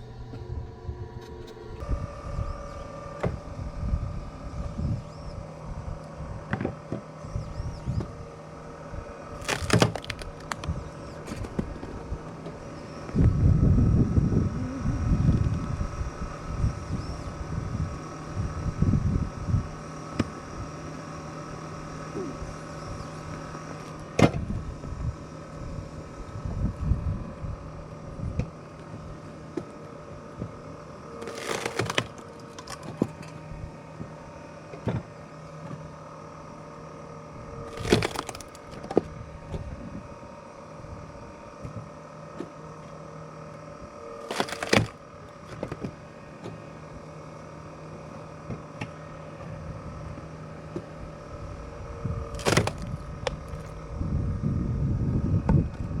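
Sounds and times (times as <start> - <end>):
mechanical hum: 0.0 - 56.0
logs splitting with cracking: 9.3 - 11.7, 31.2 - 33.1, 37.7 - 38.9, 44.2 - 45.7, 52.3 - 53.7.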